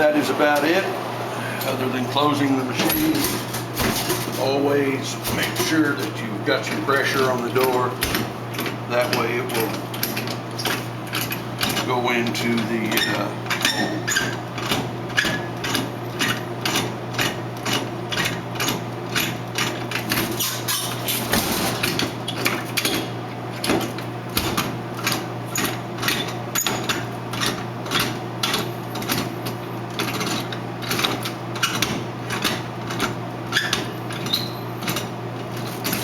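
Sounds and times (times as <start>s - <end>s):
steady low hum: 0.0s - 26.6s.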